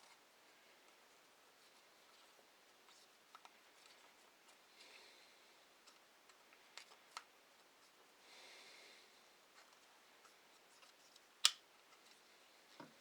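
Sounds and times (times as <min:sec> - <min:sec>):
handling clicks: 0:11.4 - 0:11.6.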